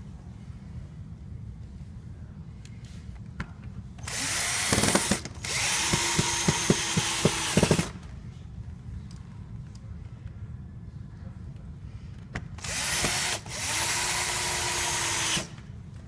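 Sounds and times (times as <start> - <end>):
power drill driving screws: 4.0 - 7.9, 12.6 - 15.6.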